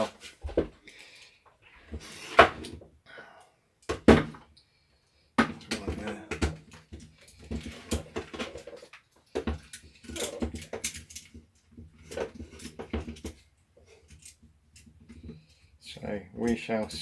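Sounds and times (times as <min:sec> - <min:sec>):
plastic parts clicking and clunking: 0:05.4 - 0:15.4.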